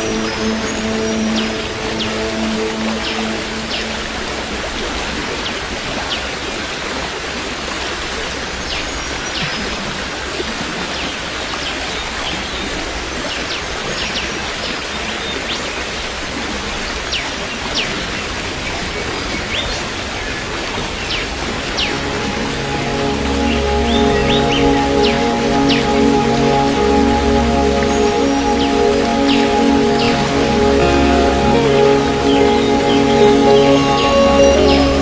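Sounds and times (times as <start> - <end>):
brief high chirps: 30.8 - 35.0.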